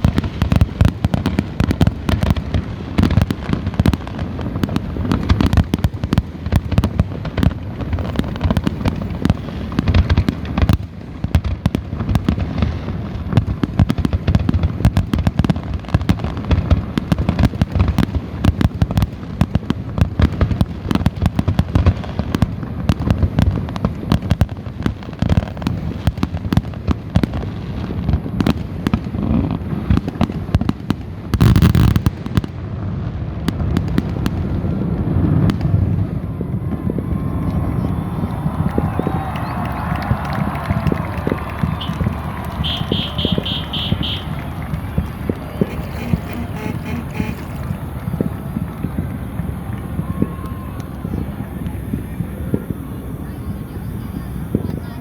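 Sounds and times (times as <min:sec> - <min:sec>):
fireworks booms and pops: 0:00.0 - 0:55.0.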